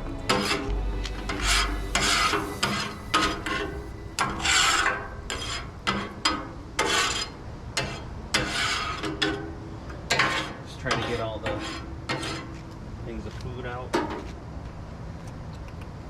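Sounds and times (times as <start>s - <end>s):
metal scraper rasping on griddle: 6.8s - 9.2s, 10.2s - 12.5s.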